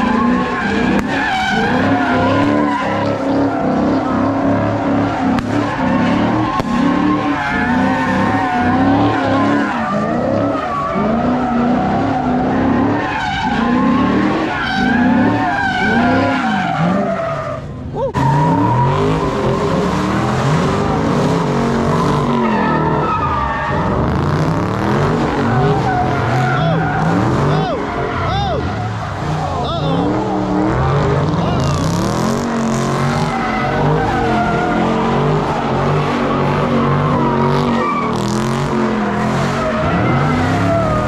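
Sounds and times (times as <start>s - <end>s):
car engine revving: 0.0s - 41.0s
tyres squealing: 0.0s - 41.0s.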